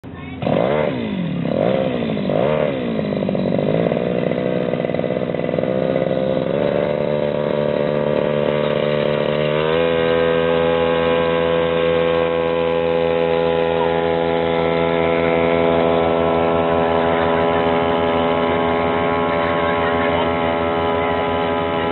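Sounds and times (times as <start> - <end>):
small engine running: 0.0 - 21.9.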